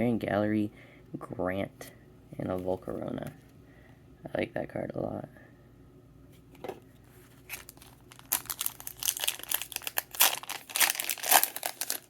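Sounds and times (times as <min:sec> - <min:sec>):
foil wrapper crinkling and tearing: 0:07.4 - 0:12.0.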